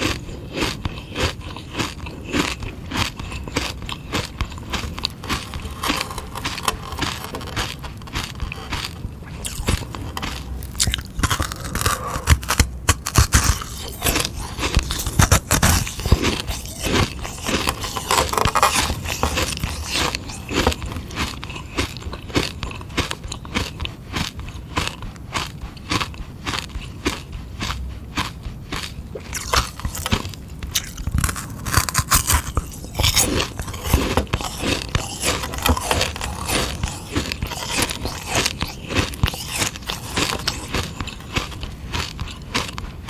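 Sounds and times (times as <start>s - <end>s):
crunching ice pop: 0.0s - 43.0s.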